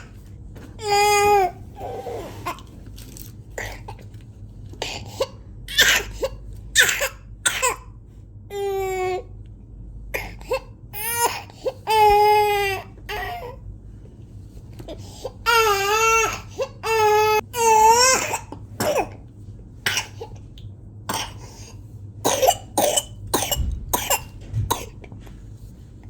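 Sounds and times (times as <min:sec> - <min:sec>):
child coughing: 0:04.8 - 0:07.9, 0:18.0 - 0:19.2, 0:19.9 - 0:20.4, 0:21.1 - 0:21.6, 0:22.2 - 0:25.0.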